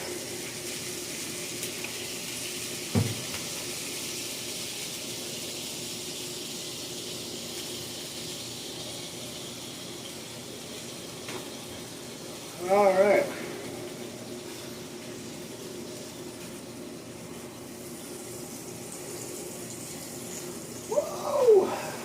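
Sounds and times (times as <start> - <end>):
water sizzling on hot griddle: 0.0 - 22.0
knock: 2.9 - 3.3.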